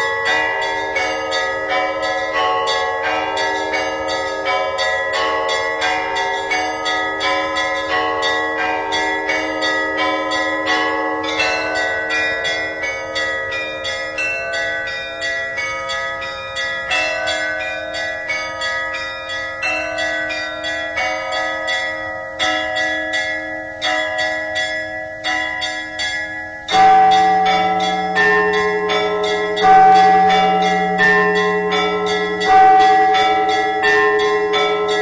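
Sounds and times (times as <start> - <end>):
small church bells ringing: 0.0 - 35.0
deep bell strike: 26.7 - 35.0.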